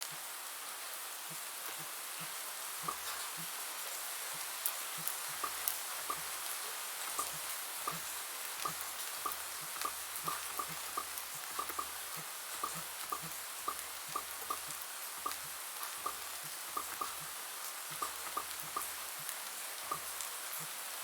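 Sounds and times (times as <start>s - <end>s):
rain hissing: 0.0s - 21.0s.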